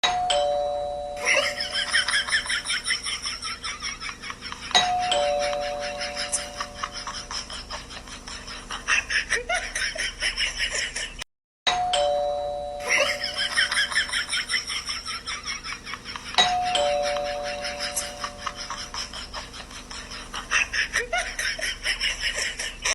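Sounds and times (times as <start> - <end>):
doorbell chime ding-dong: 0.0 - 2.4, 4.8 - 7.0, 11.7 - 13.8, 16.4 - 18.8.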